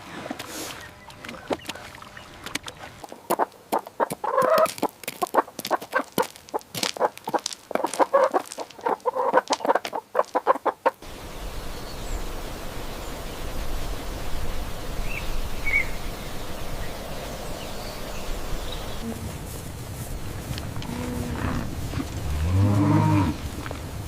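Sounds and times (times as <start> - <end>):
chickens clucking: 2.5 - 11.0
outdoor hiss: 11.0 - 24.0.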